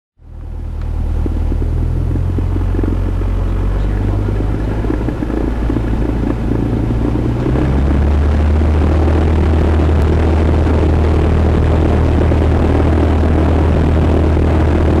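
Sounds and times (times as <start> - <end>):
light aircraft engine and propeller: 0.2 - 15.0.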